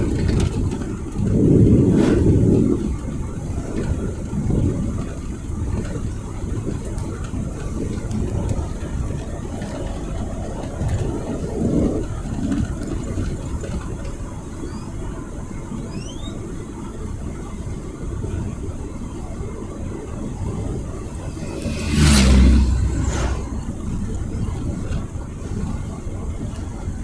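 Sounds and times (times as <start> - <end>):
car engine and road rumble: 0.0 - 27.0.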